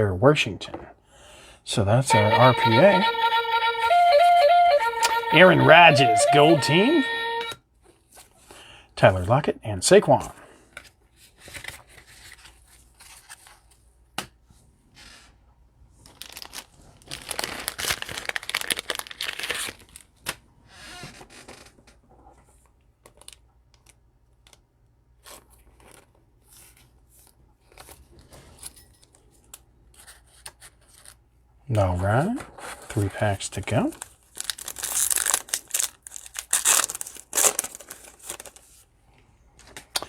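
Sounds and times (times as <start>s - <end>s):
wrapper tearing and crinkling: 16.1s - 20.0s, 33.9s - 38.7s.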